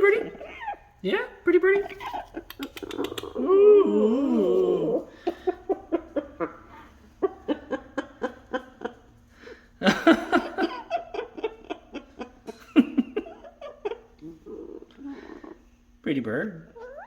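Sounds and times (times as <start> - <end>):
parrot imitating laughter: 1.6 - 3.4.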